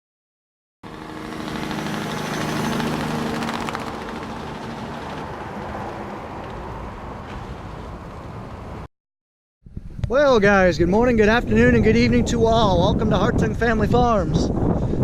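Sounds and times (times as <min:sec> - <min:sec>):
large vehicle engine running: 0:00.9 - 0:08.8
broad rushing noise: 0:00.9 - 0:08.9.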